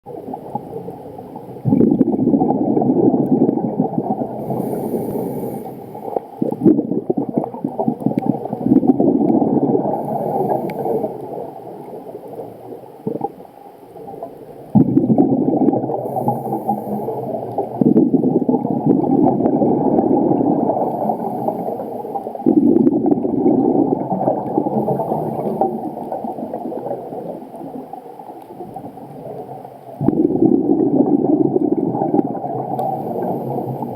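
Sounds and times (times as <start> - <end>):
bubbles gurgling underwater: 0.1 - 13.4, 14.0 - 33.9
regulator inhalation hiss: 4.4 - 6.1, 10.0 - 11.4, 16.0 - 17.6, 20.8 - 22.4, 32.8 - 33.9.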